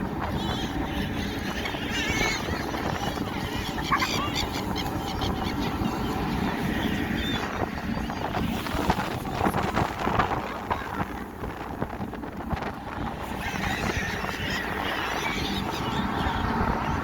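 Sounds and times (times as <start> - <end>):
engine rumble: 0.0 - 17.0
gulls calling: 0.0 - 17.0.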